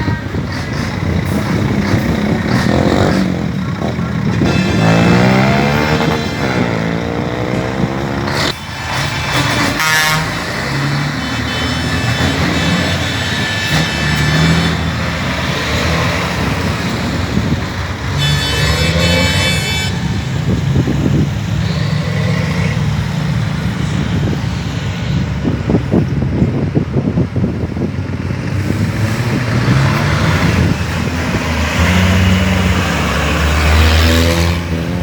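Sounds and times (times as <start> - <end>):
truck diesel engines running: 0.0 - 35.0
truck air horn: 4.3 - 8.4, 9.4 - 14.9, 18.1 - 22.8.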